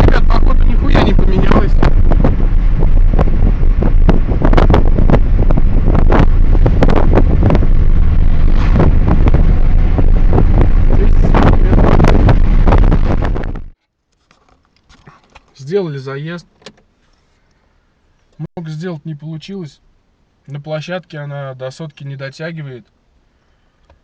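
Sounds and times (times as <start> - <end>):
car engine rumble: 0.0 - 13.8
wind buffeting microphone: 0.0 - 13.8.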